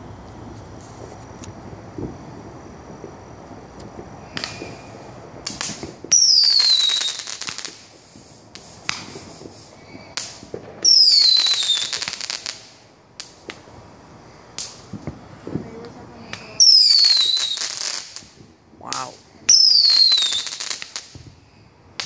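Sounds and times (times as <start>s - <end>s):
firework bangs: 0.0s - 22.0s
firework crackling: 0.0s - 22.0s
firework whistle: 3.8s - 13.6s, 14.6s - 22.0s.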